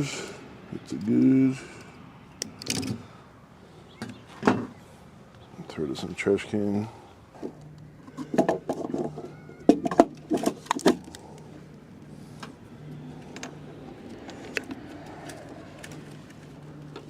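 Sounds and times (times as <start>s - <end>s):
metal parts clicking and knocking: 2.4s - 3.0s.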